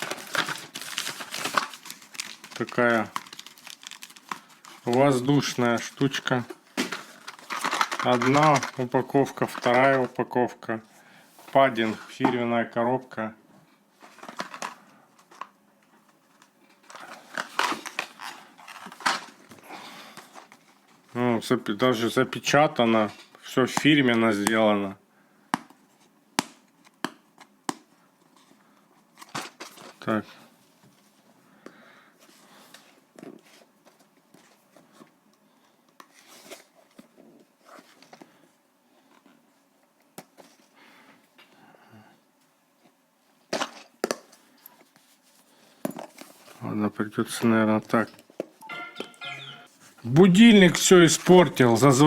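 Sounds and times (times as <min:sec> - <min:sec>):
packaging rustling and clicking: 0:00.0 - 0:05.3, 0:06.8 - 0:10.1, 0:16.4 - 0:19.6.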